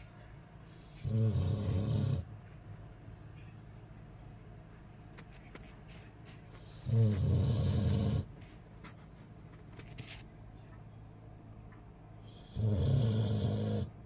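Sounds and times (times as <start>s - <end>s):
dog snoring: 1.0s - 2.3s, 6.6s - 8.3s, 12.2s - 14.0s.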